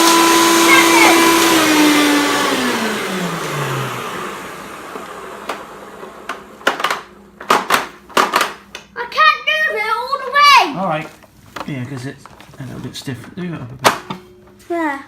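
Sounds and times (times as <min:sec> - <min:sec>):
vacuum cleaner motor winding down: 0:00.0 - 0:07.8.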